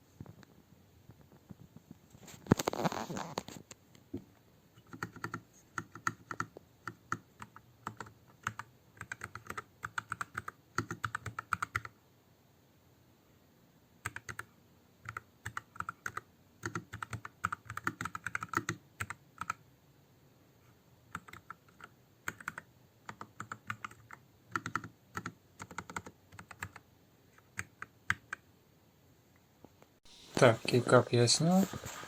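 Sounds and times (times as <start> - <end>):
mechanical keyboard typing: 4.8 - 12.0, 14.0 - 19.6, 21.1 - 26.8, 27.4 - 28.4.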